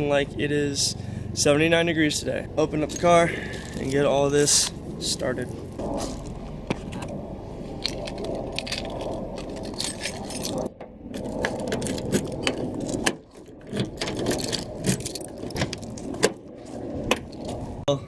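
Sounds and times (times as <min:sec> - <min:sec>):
rustling and shuffling: 0:02.9 - 0:17.8
small metal objects clinking: 0:07.8 - 0:13.0.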